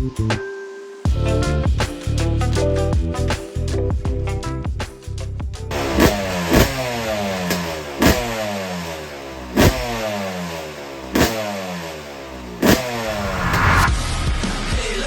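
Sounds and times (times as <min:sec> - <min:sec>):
motocross engine revving: 0:05.7 - 0:13.9.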